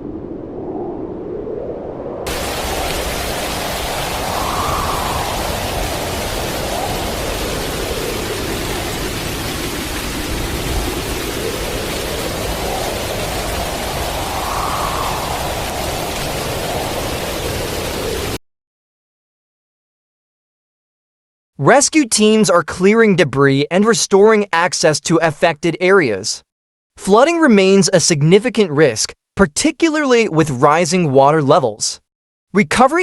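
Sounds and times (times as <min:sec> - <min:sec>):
howling wind: 0:00.0 - 0:18.4
heavy rain: 0:02.3 - 0:18.4.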